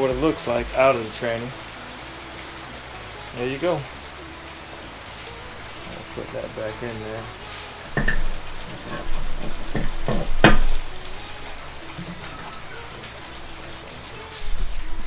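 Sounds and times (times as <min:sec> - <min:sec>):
metal parts clunking: 0:07.8 - 0:15.0.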